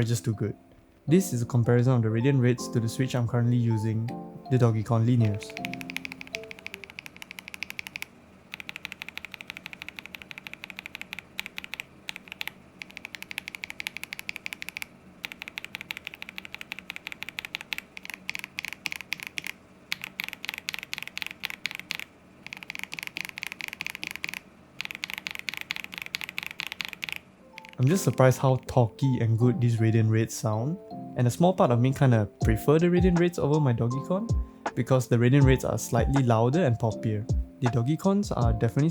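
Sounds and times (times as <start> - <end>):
fast typing on mechanical keyboard: 5.2 - 28.0.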